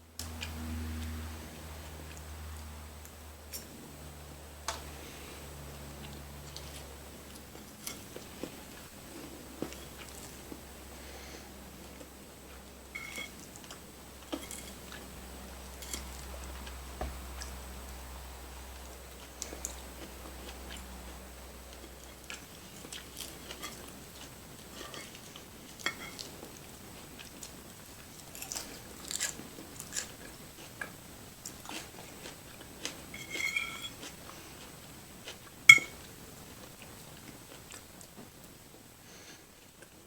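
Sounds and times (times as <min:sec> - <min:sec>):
person chewing food: 0:04.8 - 0:18.0, 0:18.8 - 0:38.2
sharp ringing clink: 0:13.0 - 0:13.3.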